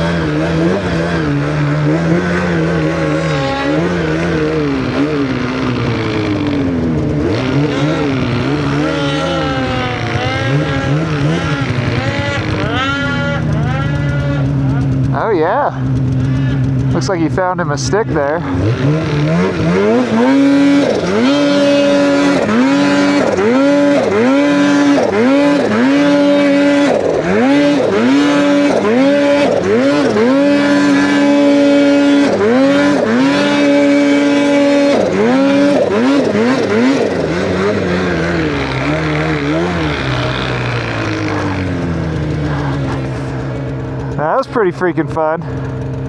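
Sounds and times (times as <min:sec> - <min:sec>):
snowmobile engine revving: 0:00.0 - 0:46.0.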